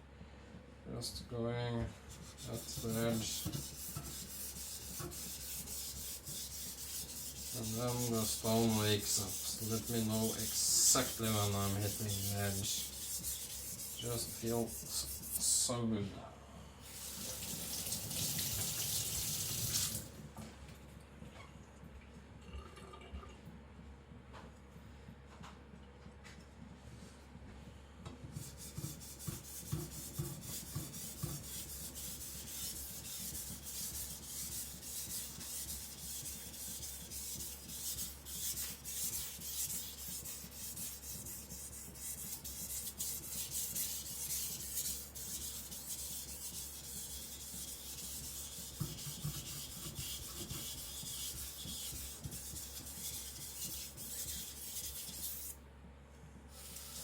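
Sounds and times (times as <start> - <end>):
blade scraping on whetstone: 2.3 - 15.4, 28.6 - 55.5.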